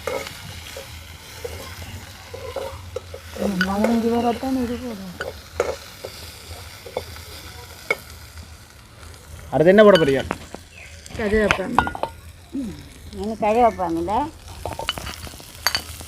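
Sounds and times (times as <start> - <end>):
spoon stirring and scraping: 0.0 - 6.2, 14.5 - 16.0
onions sizzling in hot oil: 0.0 - 16.0.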